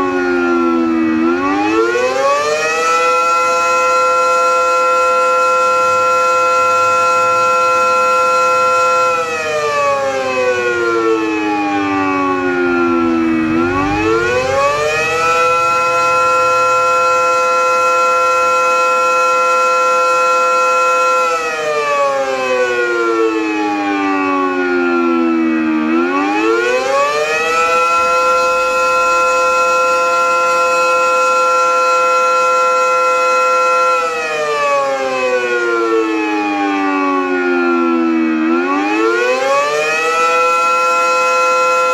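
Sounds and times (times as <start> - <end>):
air raid siren: 0.0 - 41.9.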